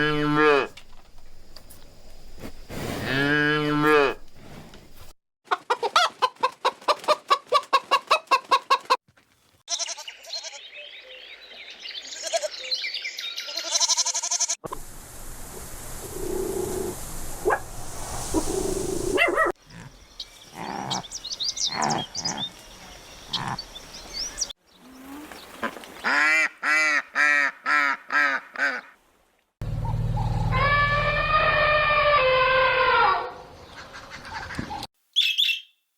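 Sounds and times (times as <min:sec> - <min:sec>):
animals calling: 0:09.7 - 0:11.3, 0:12.0 - 0:14.6, 0:18.3 - 0:29.0
bird chirping: 0:09.7 - 0:13.9, 0:33.5 - 0:35.9.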